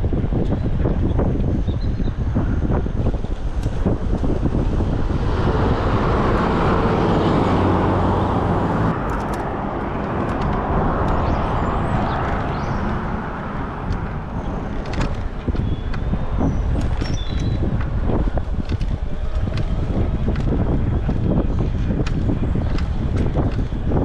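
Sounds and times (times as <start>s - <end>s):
street traffic: 0.0s - 24.0s
wind rushing over microphone: 0.0s - 24.0s
vehicle engine running: 3.0s - 17.0s.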